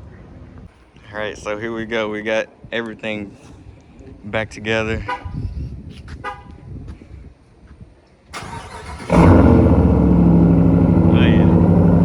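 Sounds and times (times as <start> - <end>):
truck engine idling loudly: 9.1 - 12.0.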